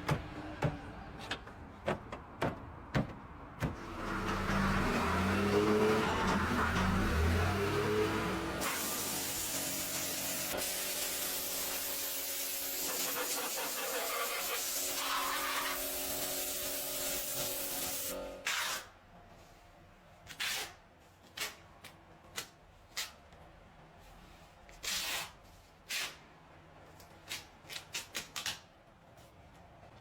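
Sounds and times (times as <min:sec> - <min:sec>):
steady spraying hiss: 0:08.6 - 0:17.8.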